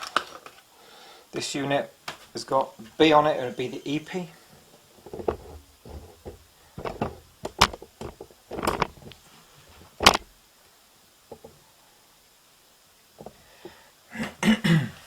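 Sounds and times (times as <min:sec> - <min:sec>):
plastic adapters knocking and clicking: 0:05.0 - 0:09.2, 0:10.0 - 0:10.3, 0:13.2 - 0:13.4.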